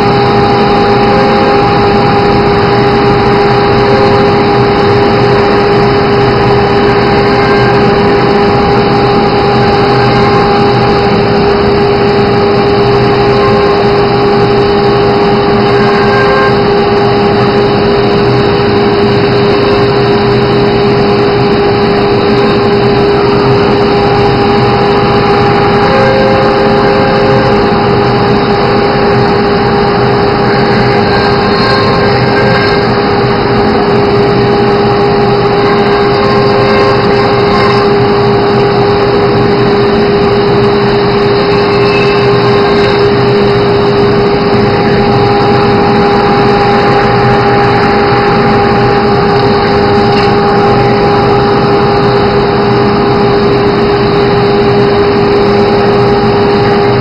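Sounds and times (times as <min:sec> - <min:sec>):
cnc router whining: 0:00.0 - 0:57.0.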